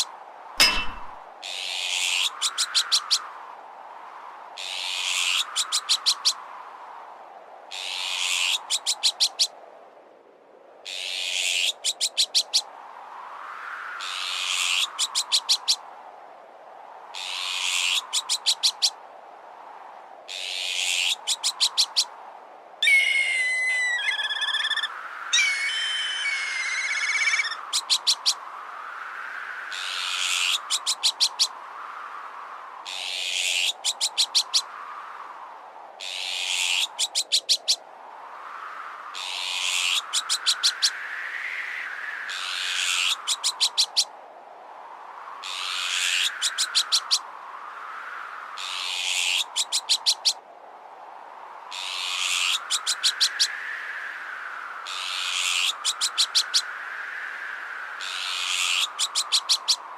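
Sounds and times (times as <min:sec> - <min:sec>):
wind: 0:00.0 - 0:59.9
harsh bird alarm call: 0:22.8 - 0:28.4
whistled bird calls: 0:22.8 - 0:28.4.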